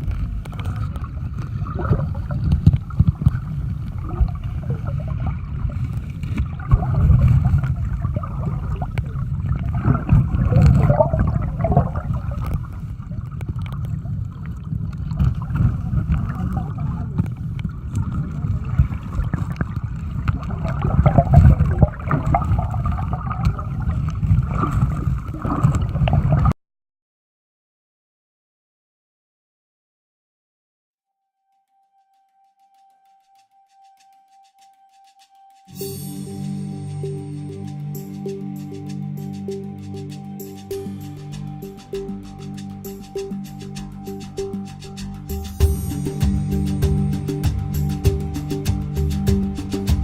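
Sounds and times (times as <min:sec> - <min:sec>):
river water gurgling and rushing: 0:00.0 - 0:26.5.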